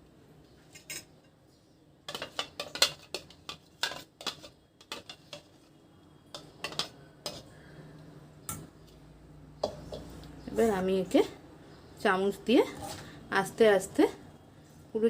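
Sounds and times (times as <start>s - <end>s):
metal spoon scraping a strainer: 2.1s - 7.6s.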